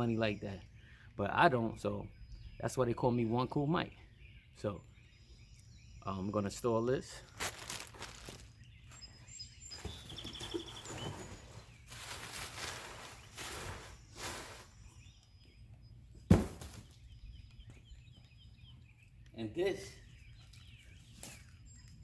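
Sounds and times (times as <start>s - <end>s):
faint bird chirps: 0.0s - 22.0s
handling noises: 7.2s - 15.0s.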